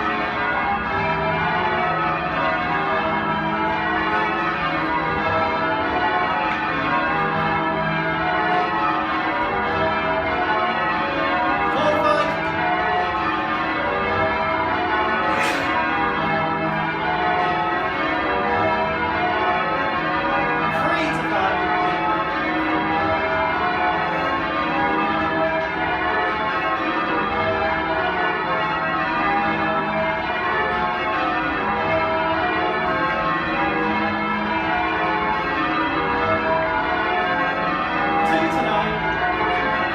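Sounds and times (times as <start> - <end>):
church bells change ringing: 0.0 - 39.9.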